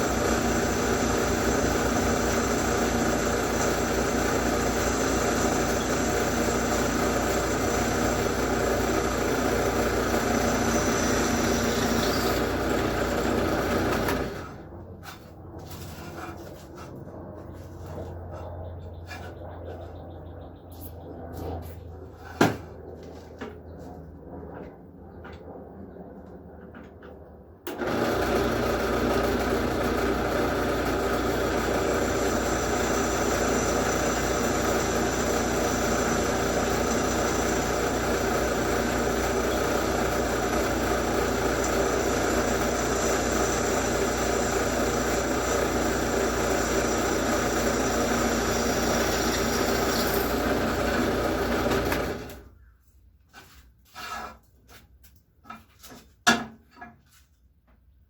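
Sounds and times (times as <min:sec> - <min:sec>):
drill press drilling steel: 0:00.0 - 0:14.5, 0:27.7 - 0:52.4.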